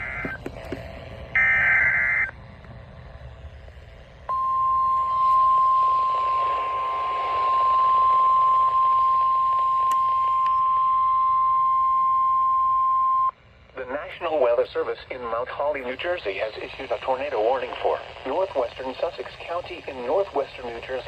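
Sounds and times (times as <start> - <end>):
steady warning alarm tone: 0.0 - 2.4, 4.3 - 13.4
radio hiss: 0.0 - 21.0.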